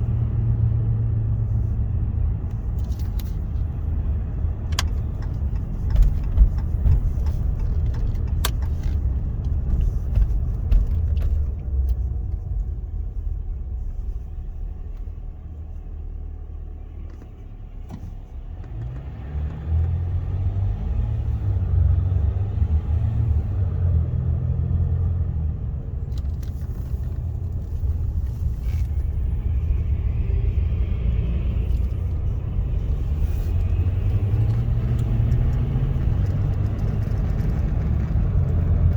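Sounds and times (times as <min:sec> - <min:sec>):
road and drivetrain rumble: 0:00.0 - 0:38.9
light rattling clicks: 0:02.5 - 0:12.4, 0:26.0 - 0:29.2, 0:31.5 - 0:38.9.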